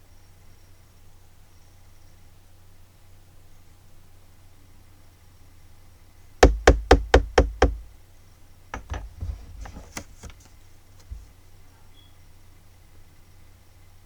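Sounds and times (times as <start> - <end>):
faint knocks and clicks: 6.4 - 7.9, 8.8 - 11.3
sharp knocks: 6.4 - 7.9, 8.8 - 11.3.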